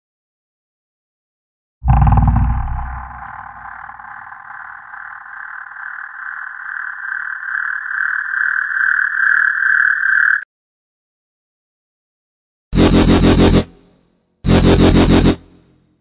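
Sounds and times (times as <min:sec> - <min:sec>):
buzzing pulsing riser tone: 0:01.8 - 0:07.8, 0:12.8 - 0:13.9, 0:14.5 - 0:15.6.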